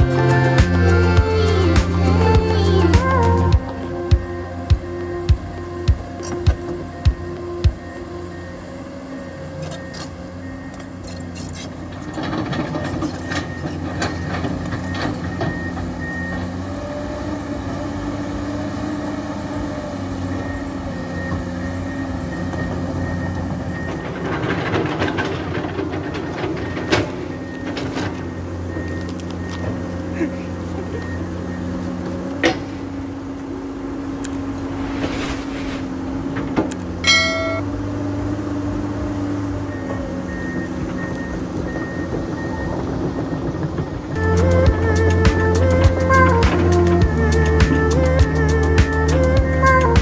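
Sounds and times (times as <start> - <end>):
heavy diesel engine running: 0.0 - 50.0
repeating beep: 37.0 - 37.6.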